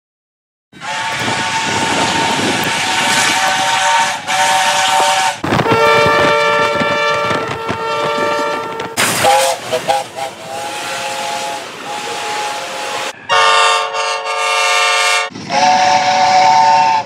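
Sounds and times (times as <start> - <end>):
multi-note train horn chord: 0.8 - 17.0.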